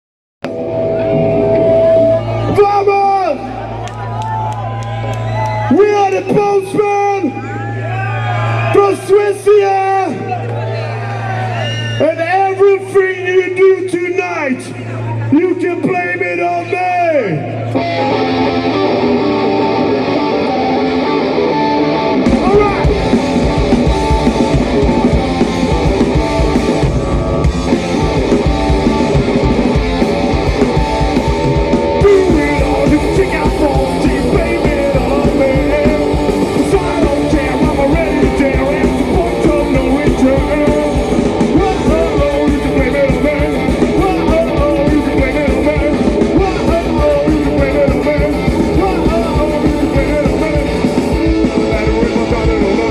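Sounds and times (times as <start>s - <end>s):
electric guitar: 0.4s - 2.6s, 17.2s - 52.9s
drums and bass beat: 22.2s - 52.9s
person singing: 32.0s - 52.9s.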